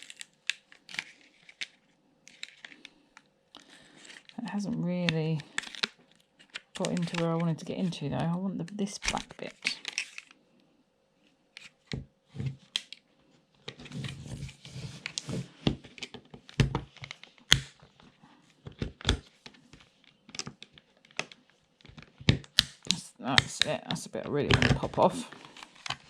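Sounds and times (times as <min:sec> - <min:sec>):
scraping on plastic: 0:13.7 - 0:17.2
plastic clicks and snaps: 0:18.7 - 0:25.1.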